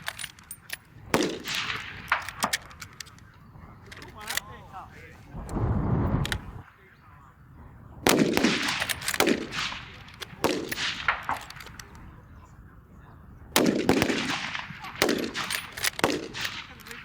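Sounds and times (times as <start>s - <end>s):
rifle shots with echo: 0.0s - 3.3s, 8.0s - 12.1s, 13.5s - 17.0s
faint cracks: 0.0s - 4.6s, 8.4s - 12.1s.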